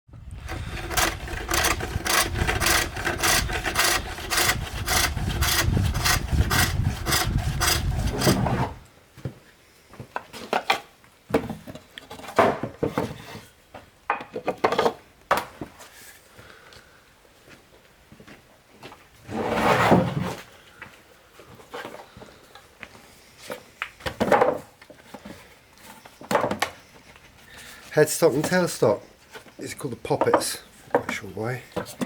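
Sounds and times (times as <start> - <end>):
hand sawing wood: 0.3 - 8.8
scrapes and knocks on wood: 0.4 - 8.8, 11.4 - 13.5, 19.3 - 20.5, 28.3 - 32.0.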